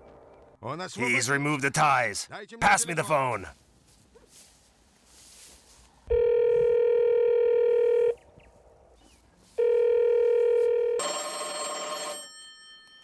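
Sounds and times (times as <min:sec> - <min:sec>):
phone ringing: 0:06.1 - 0:08.1, 0:09.6 - 0:12.8.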